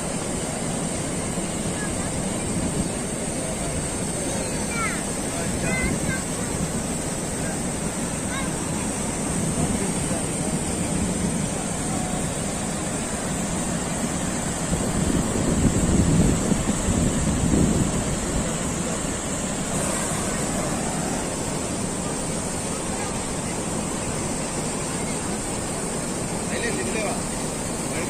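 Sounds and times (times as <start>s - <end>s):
waterfall rushing: 0.0s - 28.0s
wind buffeting microphone: 8.8s - 22.1s.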